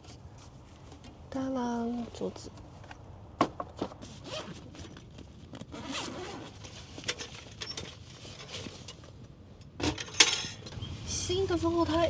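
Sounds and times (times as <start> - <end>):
camping gear rustling and knocking: 2.5 - 10.7.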